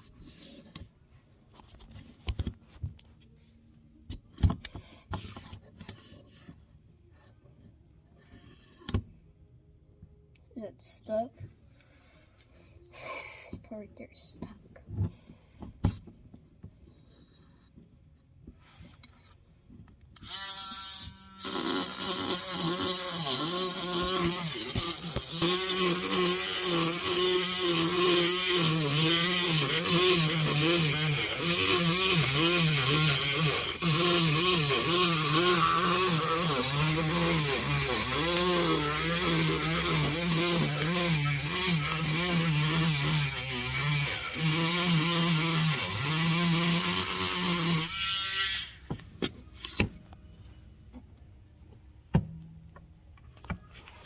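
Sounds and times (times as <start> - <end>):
power tool whining: 20.2 - 49.0.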